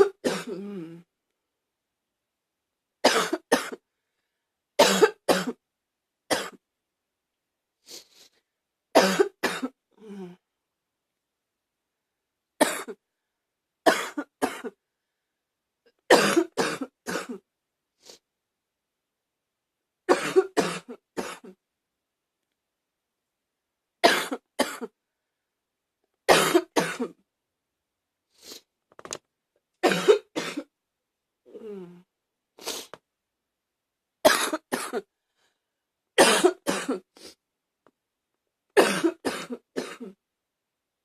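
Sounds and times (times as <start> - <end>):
person coughing: 0.0 - 0.9, 3.0 - 3.8, 4.8 - 5.6, 9.0 - 9.8, 12.6 - 13.0, 13.9 - 14.8, 16.1 - 17.4, 20.1 - 21.6, 24.0 - 25.0, 26.3 - 27.2, 29.8 - 30.7, 34.3 - 35.1, 36.2 - 37.2, 38.8 - 40.2.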